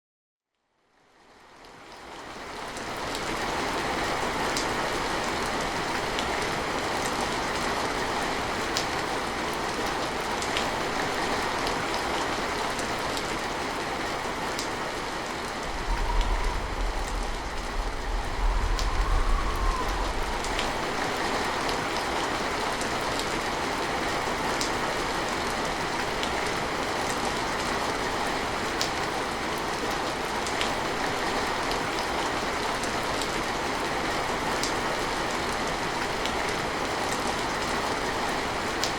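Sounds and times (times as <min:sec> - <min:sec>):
steady rain falling: 0:00.9 - 0:38.9
sharp raindrops: 0:01.6 - 0:38.9
thunder rumbling: 0:15.3 - 0:22.6.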